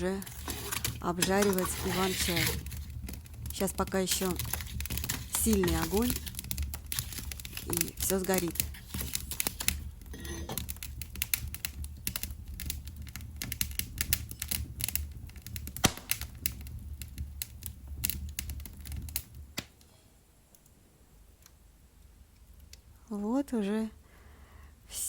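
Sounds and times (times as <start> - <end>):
low steady rumble: 0.0 - 19.6
firewood crackling and popping: 0.0 - 23.0.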